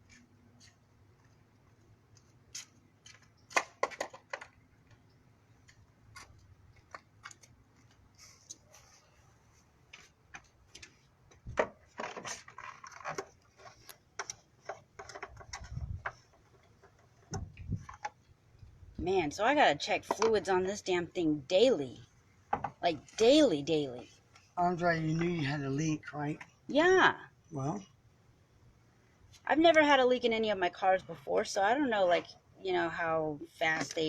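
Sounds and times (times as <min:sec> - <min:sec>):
objects being handled: 0:00.0 - 0:18.8.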